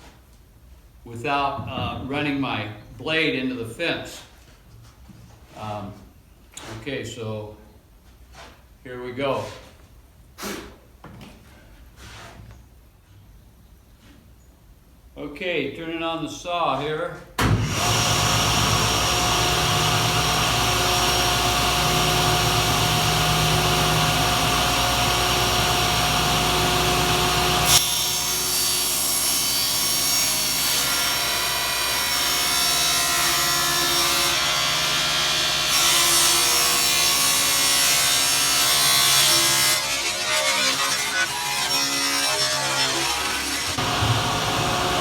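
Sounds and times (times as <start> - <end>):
table saw cutting plywood: 17.6 - 45.0.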